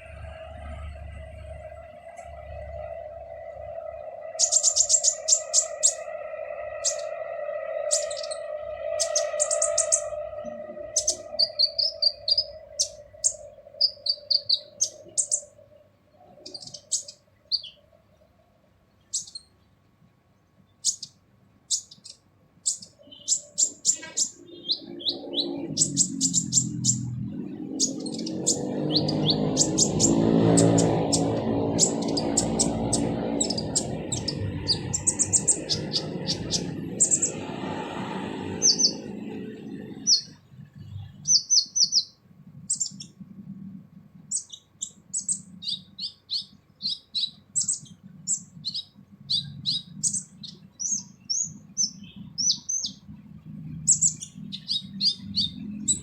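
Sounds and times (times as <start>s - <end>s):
low droning sound: 0.0s - 15.9s, 24.8s - 41.1s
low hum with overtones: 0.0s - 56.0s
sunbird chirping and trilling: 0.0s - 56.0s.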